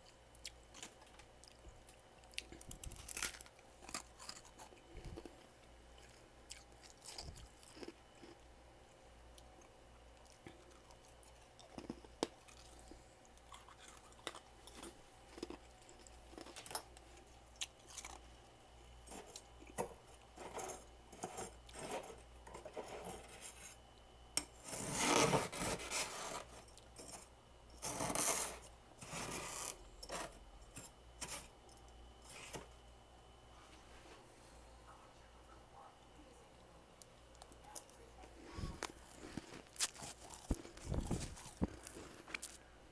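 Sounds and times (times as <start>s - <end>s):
frost scratchy crackles: 38.5s - 42.6s.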